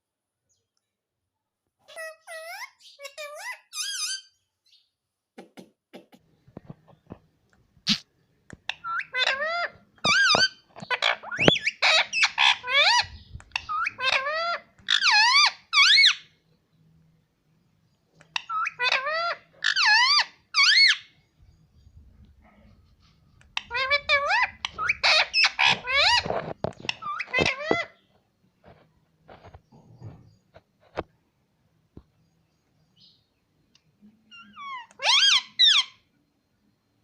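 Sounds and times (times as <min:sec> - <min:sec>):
parrot shrill calls: 0:01.9 - 0:04.4, 0:08.8 - 0:16.3, 0:18.4 - 0:21.2, 0:23.6 - 0:28.0, 0:34.3 - 0:36.1.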